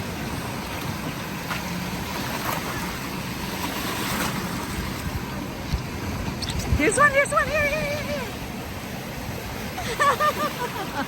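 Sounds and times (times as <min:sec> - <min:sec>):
ocean surf breaking: 0:00.0 - 0:11.0
wind rumbling on microphone: 0:00.0 - 0:11.0.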